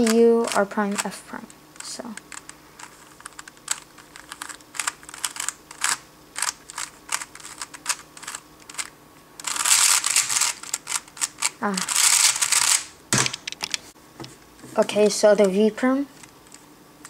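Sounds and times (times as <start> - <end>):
puzzle cube layers clicking: 1.8 - 13.8.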